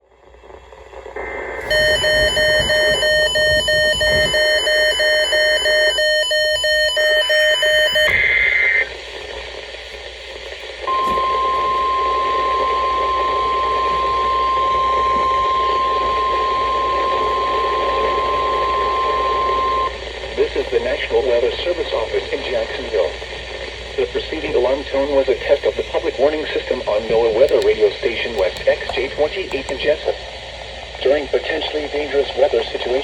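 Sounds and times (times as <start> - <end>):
radio static: 0.1 - 33.0
data screech: 1.6 - 8.8
steady warning alarm tone: 1.6 - 8.9, 10.9 - 19.9
rapid electronic alert beeping: 1.7 - 8.4.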